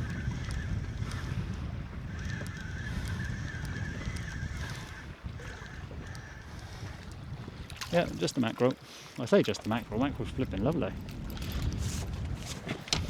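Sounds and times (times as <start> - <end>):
wind buffeting microphone: 0.0 - 8.6, 9.4 - 13.0
choppy sea water: 0.0 - 13.0.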